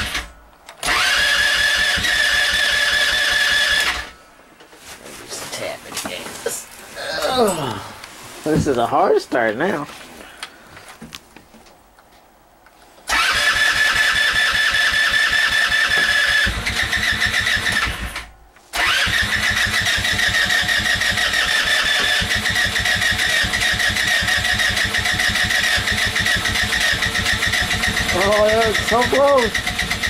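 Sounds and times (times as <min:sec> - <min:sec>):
engine cranking by electric starter: 0:00.0 - 0:04.2, 0:13.1 - 0:30.0.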